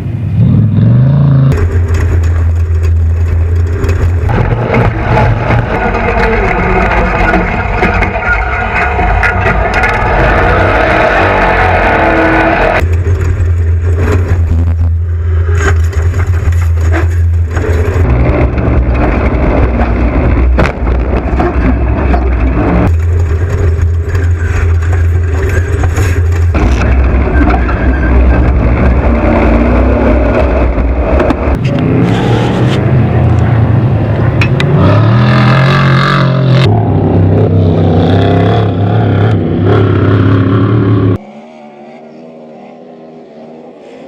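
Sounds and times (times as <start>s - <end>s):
race vehicle engines running loud: 0.0s - 44.0s.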